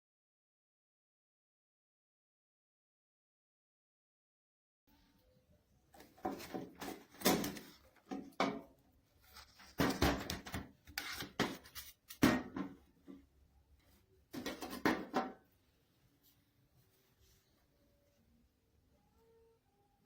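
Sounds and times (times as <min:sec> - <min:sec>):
hard objects knocking and clattering: 0:06.1 - 0:08.7, 0:09.6 - 0:12.9, 0:14.4 - 0:15.4.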